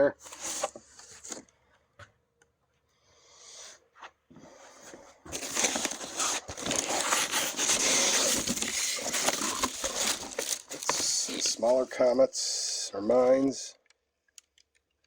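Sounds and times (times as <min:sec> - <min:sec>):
packaging crinkling and rustling: 0:00.2 - 0:01.4, 0:05.3 - 0:12.0.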